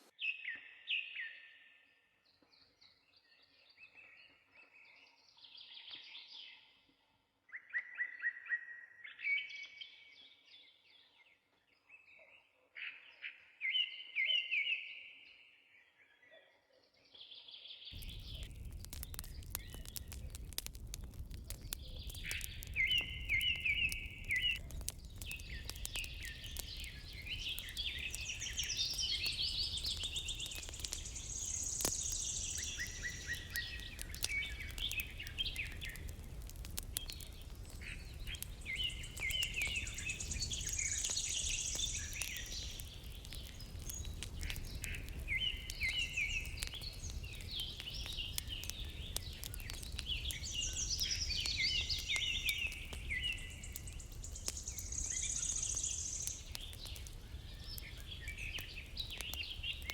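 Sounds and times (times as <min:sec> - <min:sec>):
songbirds chirping: 0:08.8 - 0:59.9
fire crackling: 0:18.0 - 0:59.9.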